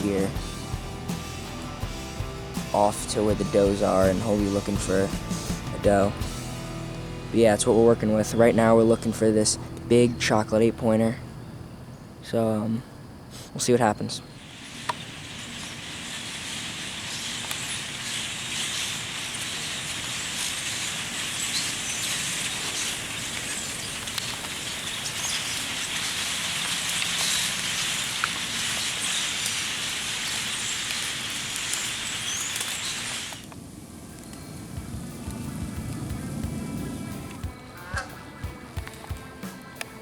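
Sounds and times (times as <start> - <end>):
light rain pattering on leaves: 14.4 - 38.0.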